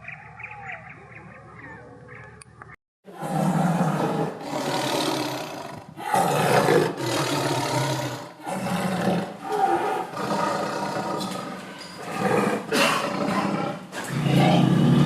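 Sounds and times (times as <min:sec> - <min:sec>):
big cat roaring: 0:03.1 - 0:15.0.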